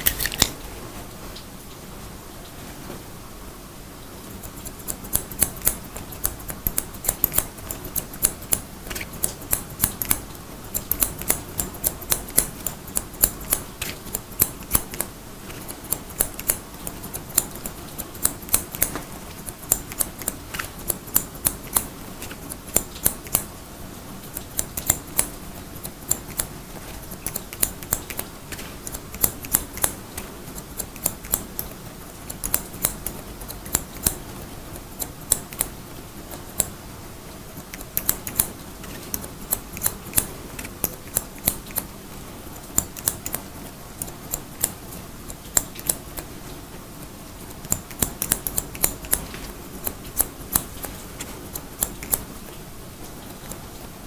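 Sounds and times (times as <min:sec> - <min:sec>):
scissors snipping hair: 0:00.0 - 0:00.6, 0:04.3 - 0:23.6, 0:24.2 - 0:36.8, 0:37.6 - 0:46.4, 0:47.0 - 0:53.7.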